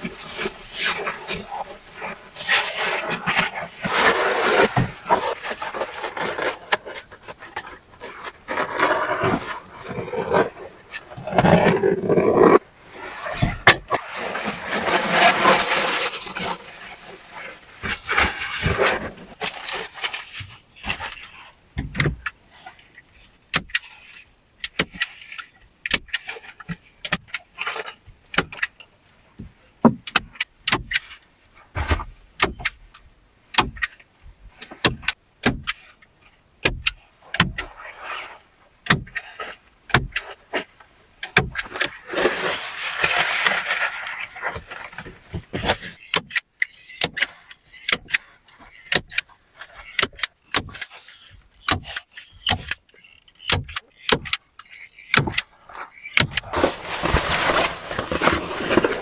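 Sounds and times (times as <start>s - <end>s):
scraping rustle: 0.0s - 21.6s, 37.0s - 46.1s, 54.7s - 59.0s
knocks and clicks of building work: 20.4s - 22.4s, 23.5s - 27.5s, 28.1s - 31.2s, 31.8s - 37.8s, 38.8s - 42.0s, 44.6s - 56.5s.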